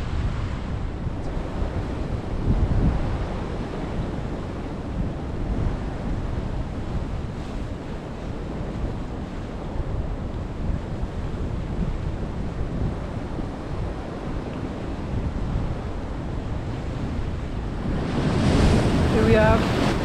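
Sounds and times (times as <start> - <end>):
wind buffeting microphone: 0.0 - 20.0
surf breaking on rocks: 11.0 - 20.0.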